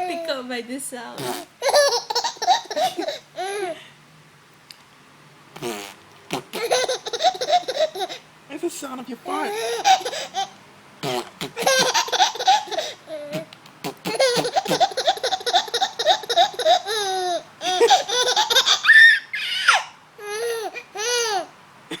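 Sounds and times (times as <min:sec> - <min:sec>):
child laughing: 0:01.6 - 0:03.8, 0:06.6 - 0:08.3, 0:09.3 - 0:10.5, 0:11.5 - 0:21.5
child squealing: 0:15.9 - 0:21.5.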